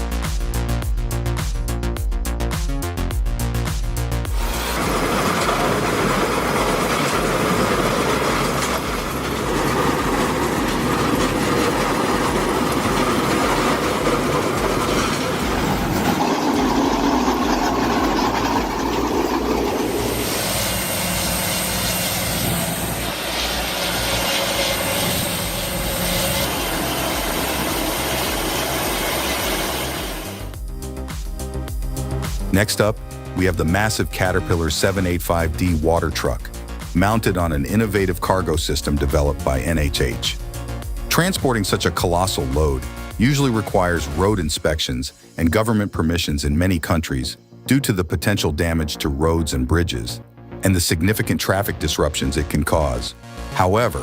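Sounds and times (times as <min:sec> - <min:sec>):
heavy machinery rumbling: 0:04.2 - 0:44.4
machinery clattering: 0:04.3 - 0:30.9, 0:36.5 - 0:44.6.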